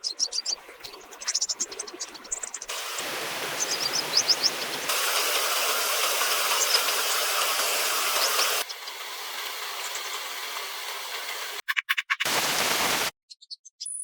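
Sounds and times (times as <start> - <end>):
birds chirping: 0.0 - 11.6, 12.2 - 14.0
rain hissing: 2.7 - 11.6, 12.3 - 13.1.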